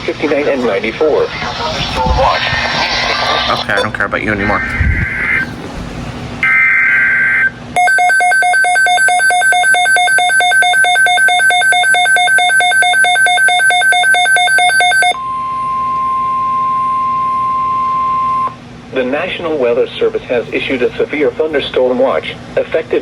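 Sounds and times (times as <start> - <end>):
steady single-pitch warning tone: 6.4 - 18.6
electronic alarm beeping rapidly: 7.8 - 15.2
warbling digital header tones: 7.8 - 15.2.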